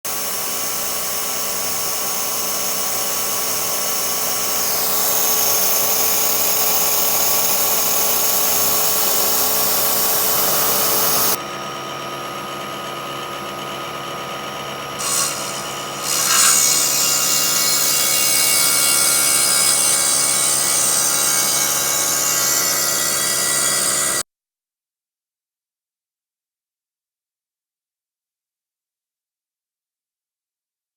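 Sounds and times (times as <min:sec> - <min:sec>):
milling machine spindle whining: 0:07.2 - 0:11.4, 0:15.0 - 0:24.2.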